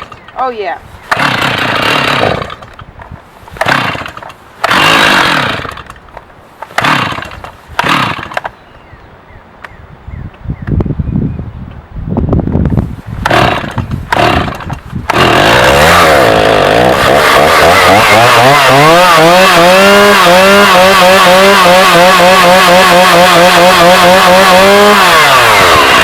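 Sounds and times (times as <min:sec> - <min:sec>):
chainsaw revving: 0:01.1 - 0:02.8, 0:03.5 - 0:06.0, 0:06.6 - 0:08.5, 0:13.2 - 0:26.0.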